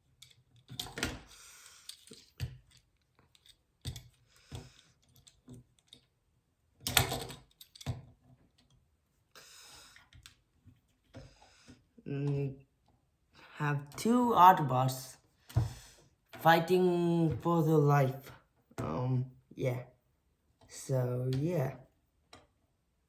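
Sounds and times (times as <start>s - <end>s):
plastic parts clicking and clacking: 0.0s - 6.1s, 6.8s - 8.8s.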